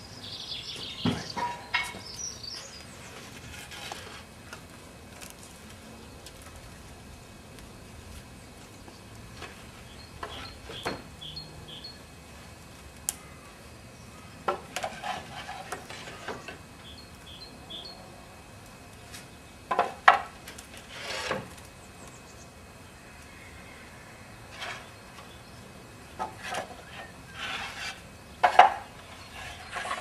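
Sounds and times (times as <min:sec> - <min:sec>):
wood scraping: 0:01.0 - 0:07.0, 0:14.5 - 0:16.6, 0:19.1 - 0:21.7, 0:24.5 - 0:24.9, 0:26.2 - 0:30.0
wood clattering: 0:26.2 - 0:30.0.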